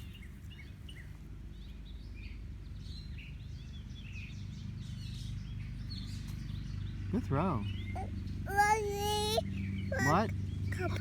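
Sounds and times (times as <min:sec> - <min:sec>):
birds chirping: 0:05.9 - 0:11.0.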